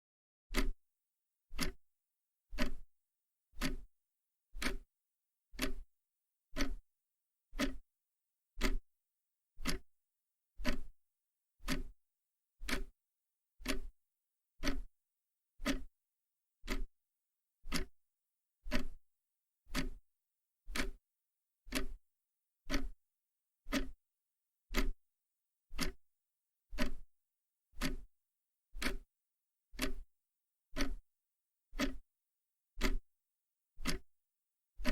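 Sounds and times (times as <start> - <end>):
mechanical clock ticking: 0.6 - 0.8, 1.6 - 1.8, 2.6 - 2.8, 3.6 - 3.9, 4.6 - 4.8, 5.6 - 5.8, 6.6 - 6.8, 7.6 - 7.8, 8.6 - 8.8, 9.6 - 9.8, 10.6 - 10.9, 11.6 - 11.9, 12.6 - 12.9, 13.6 - 13.9, 14.6 - 14.9, 15.6 - 15.9, 16.7 - 16.9, 17.7 - 17.9, 18.7 - 18.9, 19.7 - 20.0, 20.7 - 21.0, 21.7 - 22.0, 22.7 - 23.0, 24.7 - 24.9, 25.8 - 26.0, 26.8 - 27.0, 27.8 - 28.0, 28.8 - 29.0, 29.8 - 30.0, 30.8 - 31.0, 31.8 - 32.0, 32.8 - 33.0, 33.8 - 34.0.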